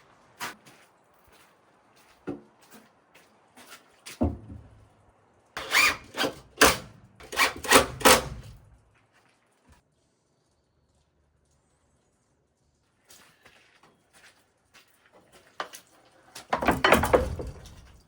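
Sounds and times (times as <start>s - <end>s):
wooden parts knocking: 16.5s - 18.0s.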